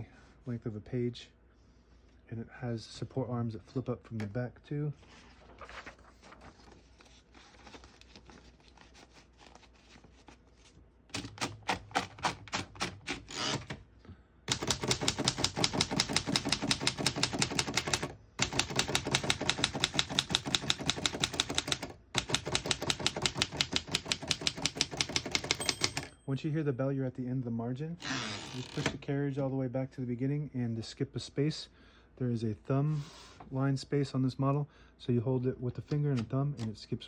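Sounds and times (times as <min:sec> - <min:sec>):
manual typewriter keystrokes: 0:11.1 - 0:13.8, 0:14.5 - 0:26.2.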